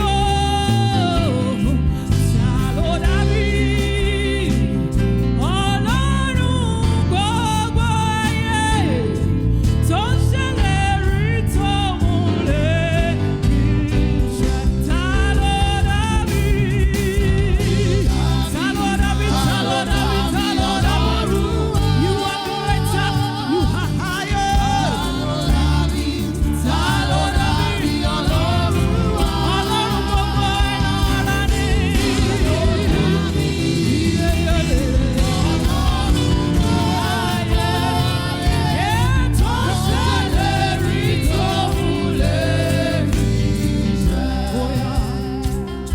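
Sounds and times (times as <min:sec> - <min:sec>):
choir singing with instruments: 0:00.0 - 0:45.9.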